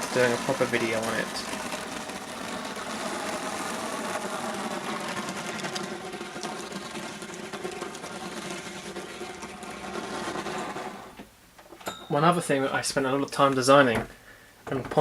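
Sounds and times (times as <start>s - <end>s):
electric motors whirring: 0.0s - 11.2s.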